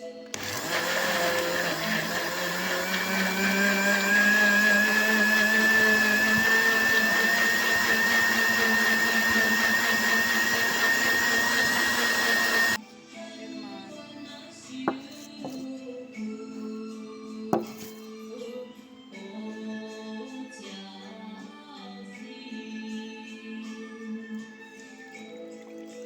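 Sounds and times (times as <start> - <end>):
blender motor whining: 0.0 - 12.8.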